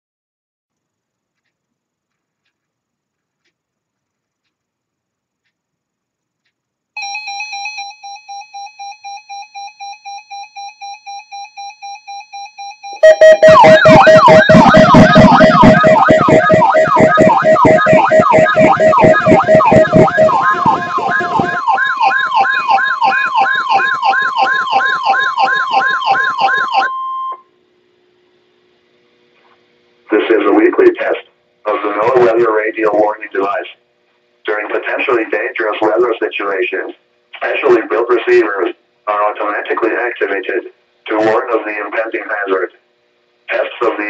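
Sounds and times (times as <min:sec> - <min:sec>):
steady warning tone: 0:07.0 - 0:27.5, 0:30.1 - 0:33.8
siren-like alarm sweeping: 0:11.6 - 0:27.4
pulsing electronic beep: 0:12.4 - 0:27.4.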